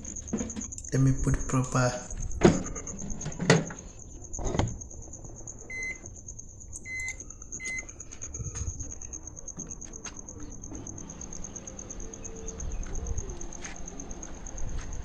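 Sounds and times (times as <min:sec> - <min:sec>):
microwave keypad beeping: 0:05.7 - 0:06.1, 0:06.8 - 0:08.7.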